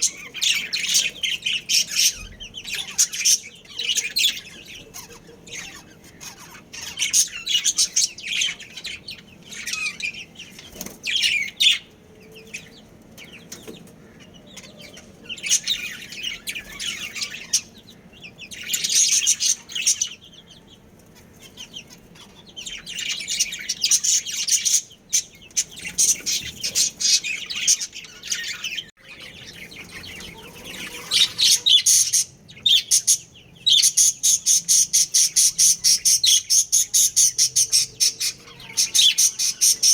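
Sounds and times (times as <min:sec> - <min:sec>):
budgerigars chattering and chirping: 0:00.0 - 0:39.9
fast repeated bird calls: 0:13.4 - 0:39.9.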